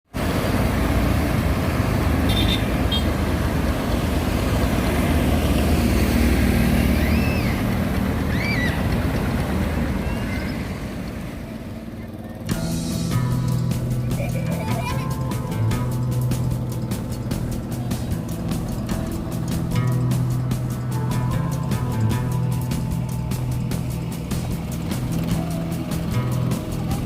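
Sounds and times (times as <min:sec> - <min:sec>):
road traffic: 0:00.1 - 0:27.0
high rising-and-falling tones: 0:12.6 - 0:27.0.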